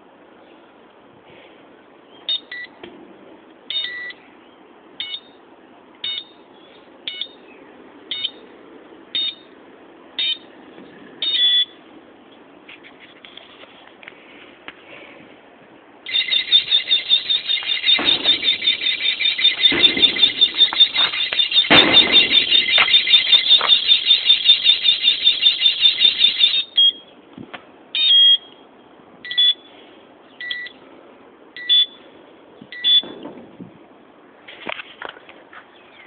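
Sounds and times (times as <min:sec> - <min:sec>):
double-tone alarm chirps: 0:03.7 - 0:04.2, 0:09.2 - 0:09.5, 0:10.2 - 0:10.4, 0:16.1 - 0:27.1, 0:28.0 - 0:28.5, 0:31.6 - 0:32.0, 0:32.8 - 0:33.1
warbling alarm siren: 0:16.1 - 0:26.8.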